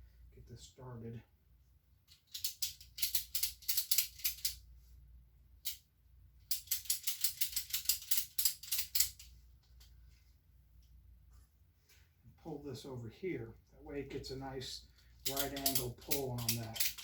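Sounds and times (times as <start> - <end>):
ratchet strap clicking: 2.1 - 4.6, 6.5 - 9.3, 15.2 - 17.0.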